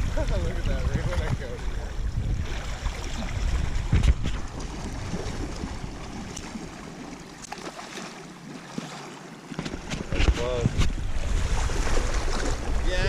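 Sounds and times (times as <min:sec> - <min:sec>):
wind buffeting microphone: 0:00.0 - 0:07.0, 0:09.6 - 0:13.0
flowing river water: 0:00.0 - 0:13.0.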